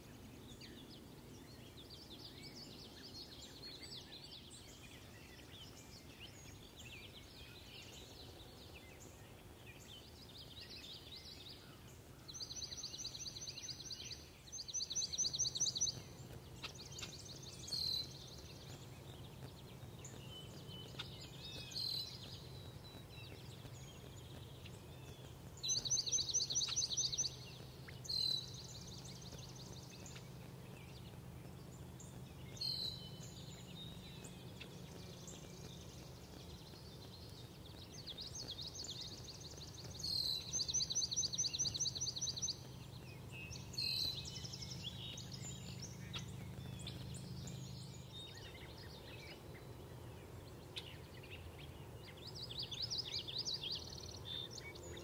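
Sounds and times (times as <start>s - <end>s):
steady low hum: 0.0s - 55.0s
songbird trilling: 11.7s - 31.1s, 32.0s - 49.7s.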